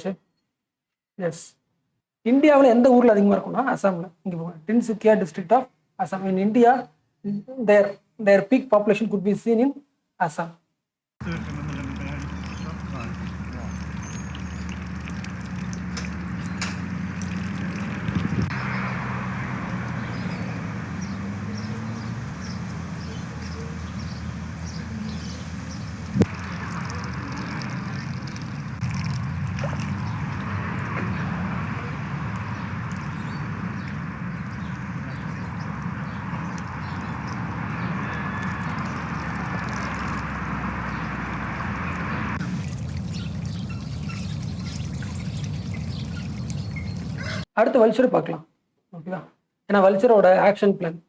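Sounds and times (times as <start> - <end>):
water noise: 11.2 - 47.4
faint bird calls: 11.4 - 17.5, 31.0 - 41.4, 43.1 - 47.5.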